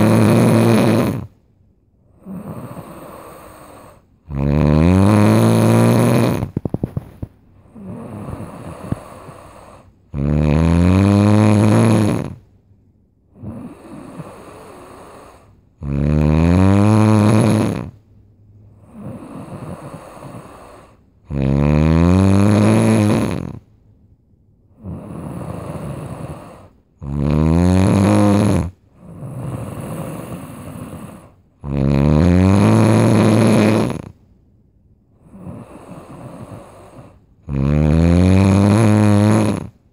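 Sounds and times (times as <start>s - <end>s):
loud snoring: 0.0s - 1.4s, 2.1s - 7.0s, 7.6s - 12.5s, 13.3s - 18.0s, 18.7s - 23.7s, 24.7s - 34.2s, 35.2s - 39.8s
snore rattle: 0.0s - 1.4s, 2.2s - 12.4s, 13.3s - 18.0s, 18.8s - 23.7s, 24.8s - 34.2s, 35.2s - 39.8s
breathy exhale: 2.1s - 4.2s, 7.6s - 10.0s, 13.3s - 15.6s, 18.7s - 21.1s, 35.2s - 37.3s.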